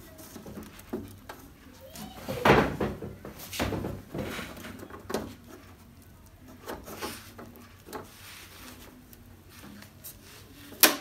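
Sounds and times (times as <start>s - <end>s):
plastic scraping and knocking: 0.2s - 8.2s.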